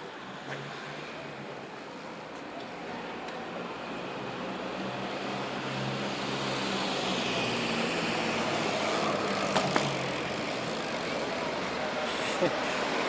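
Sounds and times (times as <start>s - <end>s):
motor vehicle humming: 4.2s - 13.0s.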